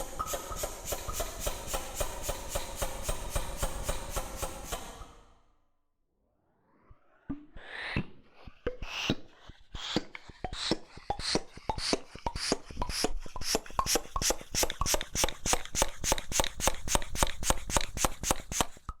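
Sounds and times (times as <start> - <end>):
bike pump strokes: 0.0 - 5.1, 9.7 - 18.9.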